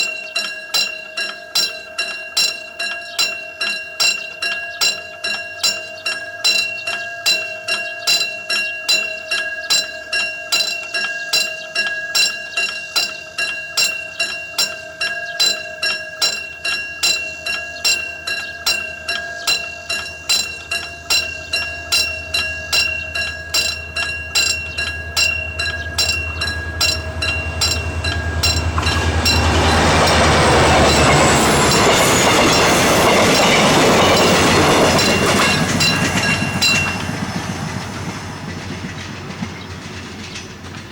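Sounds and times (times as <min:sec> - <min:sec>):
level crossing warning bell ringing: 0:00.0 - 0:39.7
train rumbling past: 0:16.4 - 0:40.9.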